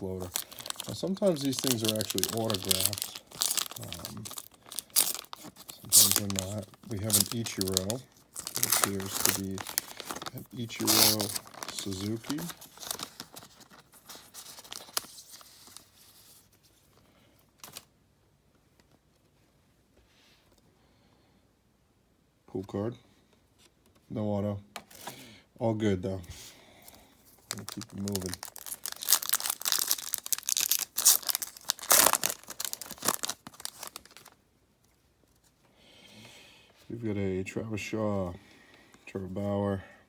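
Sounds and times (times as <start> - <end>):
plastic packaging crinkling: 0.0 - 16.4, 27.3 - 34.4.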